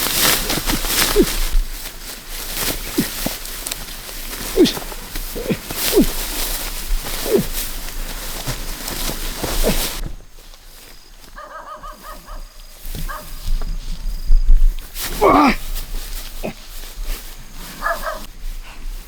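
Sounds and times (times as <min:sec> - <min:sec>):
rustling through dry stalks: 0:00.0 - 0:19.0
animal yelping: 0:11.4 - 0:12.5.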